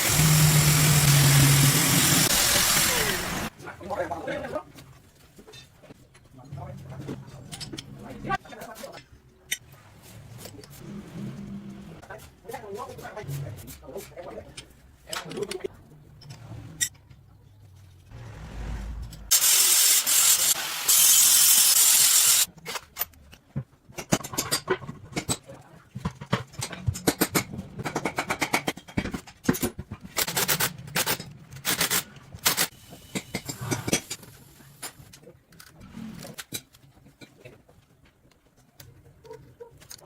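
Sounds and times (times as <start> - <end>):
rasping hiss on metal: 19.3 - 22.5.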